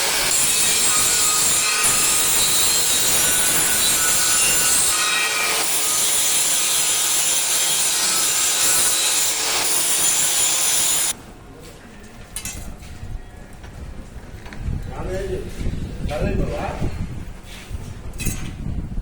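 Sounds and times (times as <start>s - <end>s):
angle grinder on steel: 0.0s - 11.2s.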